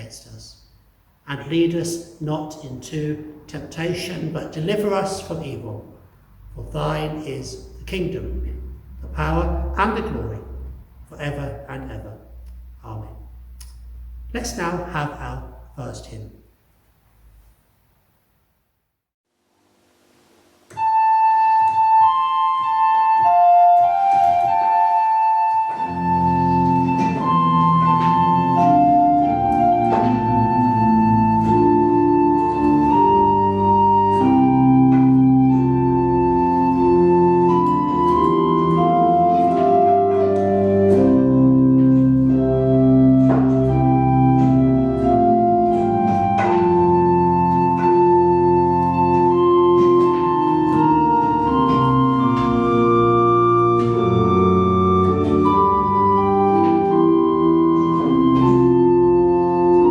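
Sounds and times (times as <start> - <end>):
organ playing a hymn: 1.3 - 16.3, 20.7 - 59.9.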